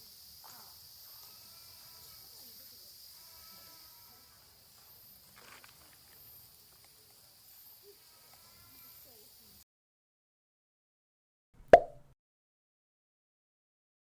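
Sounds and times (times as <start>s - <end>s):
insects chirring: 0.0s - 9.4s.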